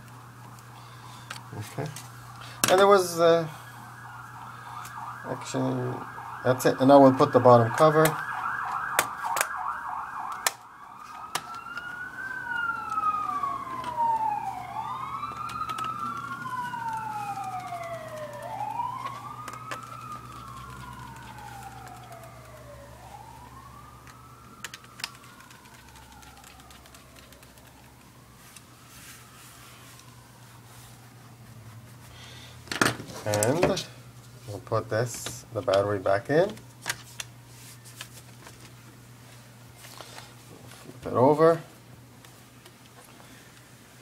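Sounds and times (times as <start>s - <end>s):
emergency siren wailing: 0.0s - 32.0s
laptop cover clicking: 8.0s - 9.6s, 10.2s - 10.6s, 15.3s - 16.0s.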